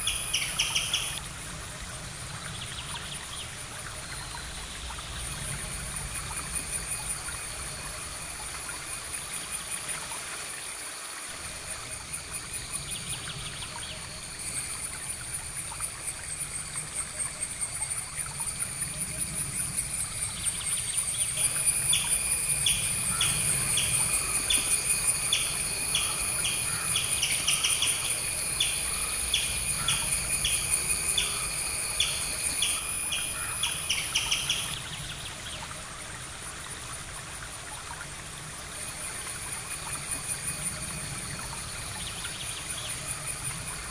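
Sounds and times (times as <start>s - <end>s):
short chirping calls: 0.0s - 1.2s.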